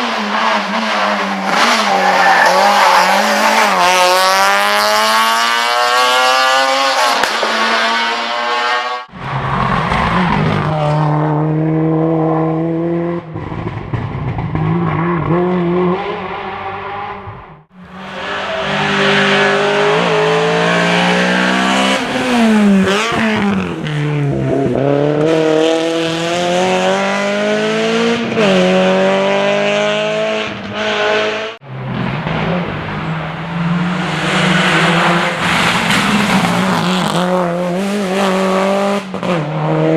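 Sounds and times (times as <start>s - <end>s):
rally car engines revving: 0.0s - 39.9s.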